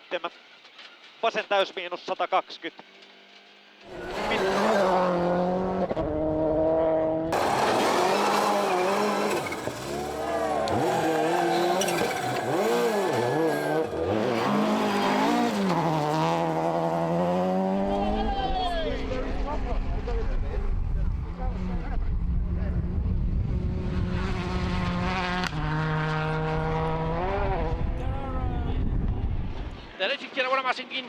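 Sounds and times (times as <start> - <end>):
rally car engine revving: 3.8 - 28.5.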